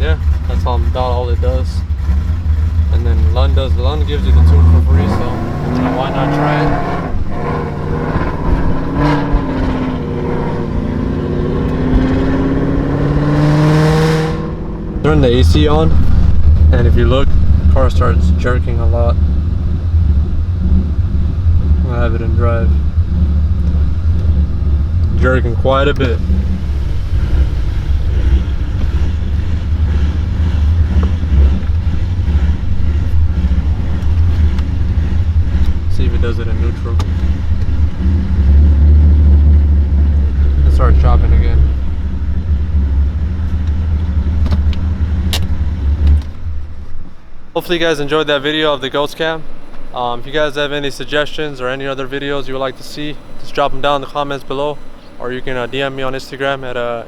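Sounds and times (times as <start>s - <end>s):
car engine choppy idle: 0.0s - 13.2s, 14.6s - 57.0s.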